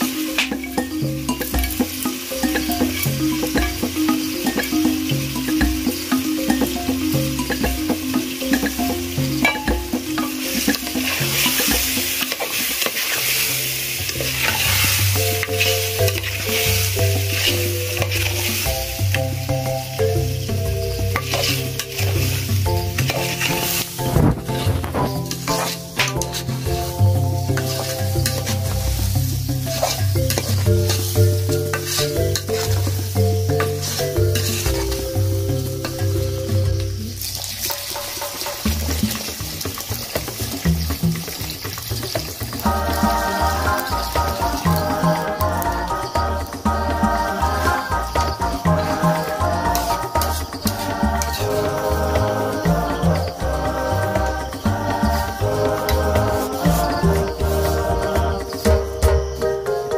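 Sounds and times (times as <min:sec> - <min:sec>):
scraping stirring strokes: 0:00.0 - 0:59.4
background music with bass: 0:00.0 - 0:59.9
vegetables sizzling in pan: 0:00.0 - 0:59.9
spoon scraping pot: 0:09.4 - 0:19.2, 0:21.1 - 0:35.0.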